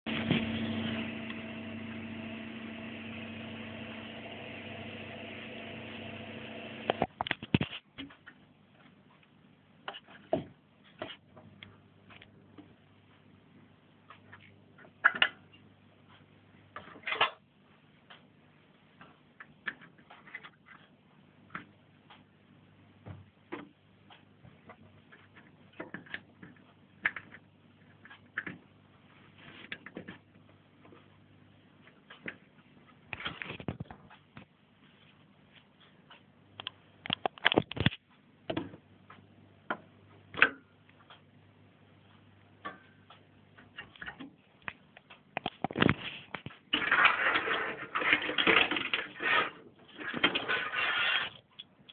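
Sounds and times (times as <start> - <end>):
machine motor humming: 0.1 - 7.1.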